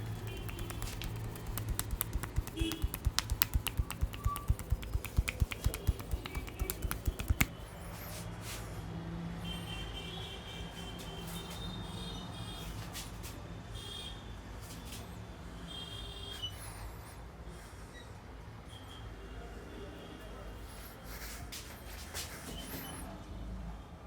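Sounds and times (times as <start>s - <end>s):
hands tapping and snapping: 0.0s - 7.5s.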